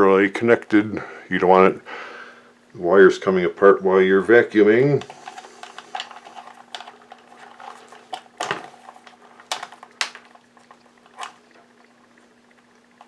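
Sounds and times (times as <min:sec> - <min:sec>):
faint steady hum: 0:00.0 - 0:13.0
clicks of plastic wire nuts: 0:05.0 - 0:11.6.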